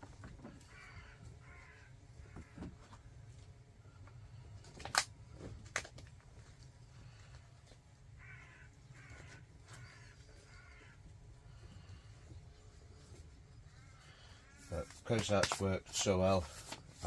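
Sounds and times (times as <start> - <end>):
crow cawing: 0.6 - 2.7, 8.2 - 12.0.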